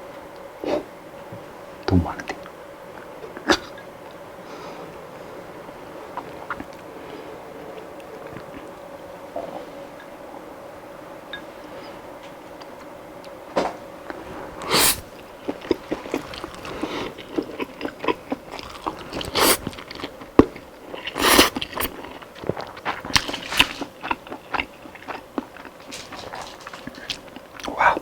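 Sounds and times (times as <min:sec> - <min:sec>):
crunchy chewing of fried chicken: 0:06.1 - 0:09.8, 0:14.0 - 0:28.0.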